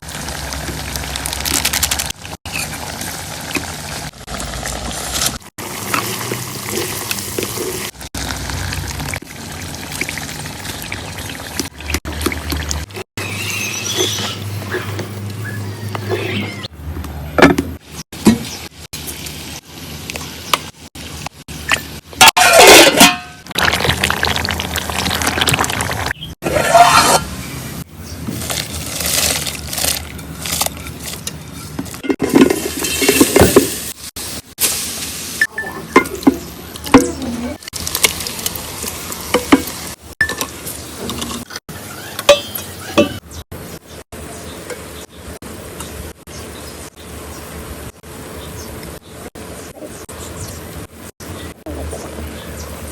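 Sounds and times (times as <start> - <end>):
utensils clinking against pot: 22.2 - 23.4, 30.6 - 33.7, 42.2 - 43.2
food sizzling in a pan: 32.6 - 36.4.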